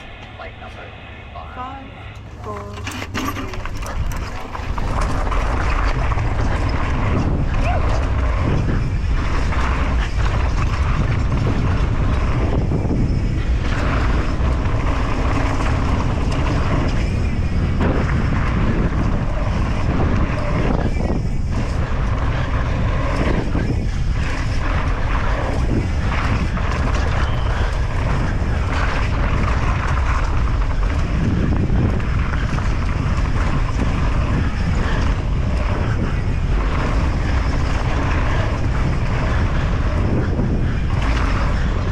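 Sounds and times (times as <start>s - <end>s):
wind rush on microphone: 0.0s - 41.9s
tyres on dirt: 2.2s - 6.8s
bike clattering over rough ground: 2.3s - 41.9s.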